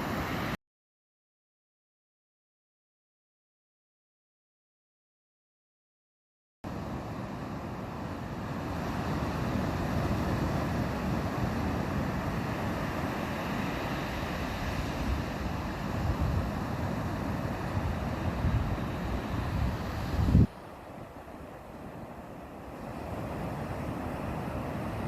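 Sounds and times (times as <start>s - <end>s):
ocean surf washing onto beach: 0.0s - 0.6s, 6.7s - 25.0s
wind buffeting microphone: 14.4s - 20.6s.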